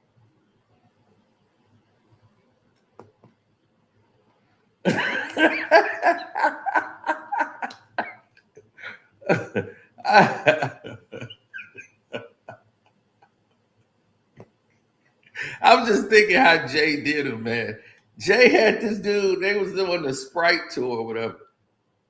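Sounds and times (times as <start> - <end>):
man laughing hard: 4.9 - 8.2, 8.8 - 12.6
man coughing and wheezing: 4.9 - 12.5.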